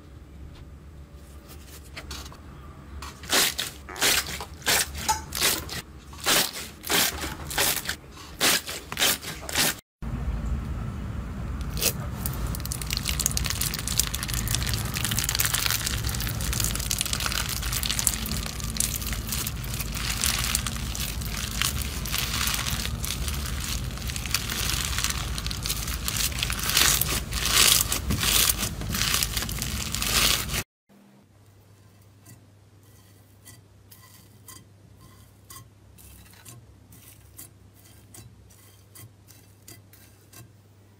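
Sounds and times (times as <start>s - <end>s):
crunchy slime crackling: 3.2s - 9.7s, 11.6s - 30.6s.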